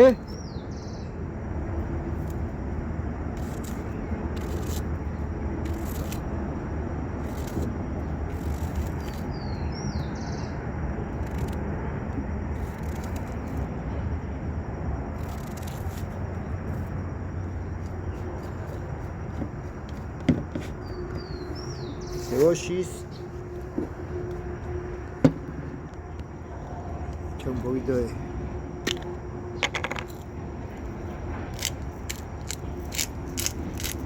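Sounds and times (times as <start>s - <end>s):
steady low outdoor noise: 0.0s - 34.0s
faint irregular ticks: 15.2s - 16.0s.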